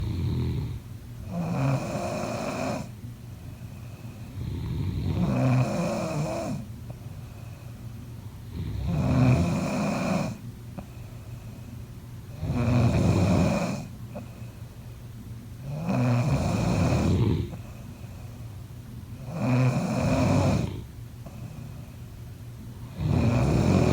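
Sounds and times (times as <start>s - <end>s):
person snoring: 22.8s - 23.9s.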